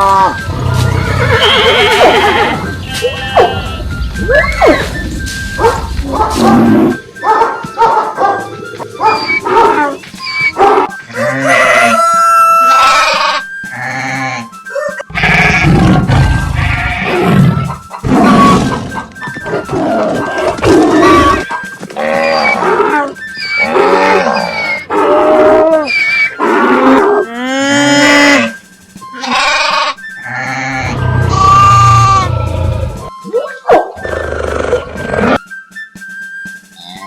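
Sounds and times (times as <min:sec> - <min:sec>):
background music: 0:00.0 - 0:37.0
cartoon animal calls: 0:09.0 - 0:19.0, 0:29.1 - 0:35.4.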